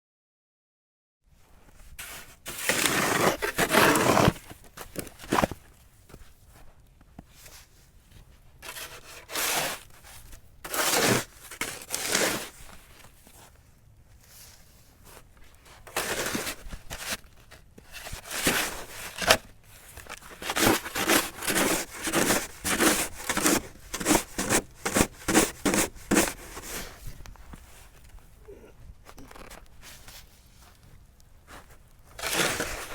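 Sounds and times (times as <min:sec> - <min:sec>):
snow shovel scraping snow: 0:02.0 - 0:04.6, 0:08.6 - 0:13.5, 0:15.8 - 0:17.2, 0:17.8 - 0:19.4, 0:20.2 - 0:27.2, 0:31.5 - 0:32.9.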